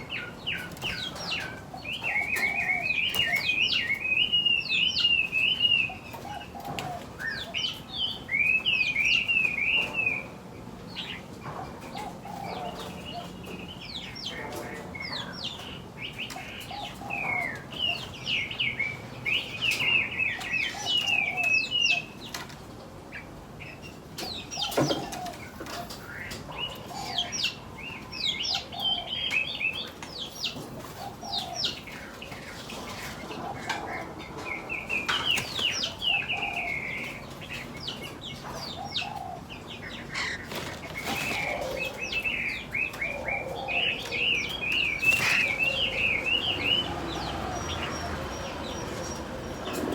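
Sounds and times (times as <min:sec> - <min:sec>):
small birds chirping: 0:00.0 - 0:49.9.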